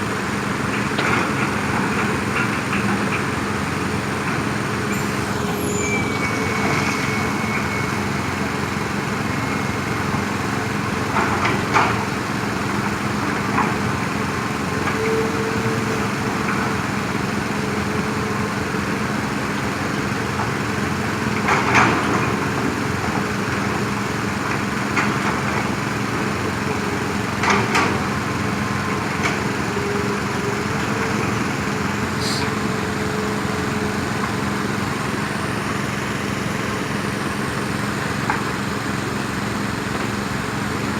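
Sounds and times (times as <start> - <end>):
diesel machinery running: 0.0 - 40.9.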